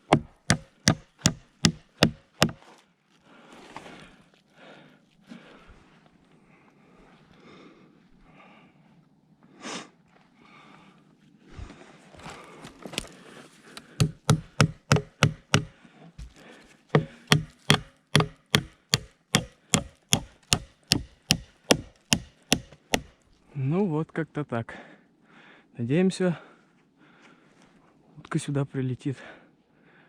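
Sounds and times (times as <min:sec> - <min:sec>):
scattered knocks: 0:14.0 - 0:15.7, 0:17.0 - 0:23.1
hammer blows: 0:14.0 - 0:16.3, 0:17.0 - 0:23.1.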